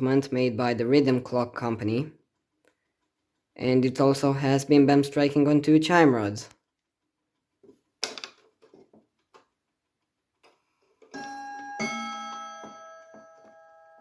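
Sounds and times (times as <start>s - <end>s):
two-tone clock chime: 11.1s - 14.0s.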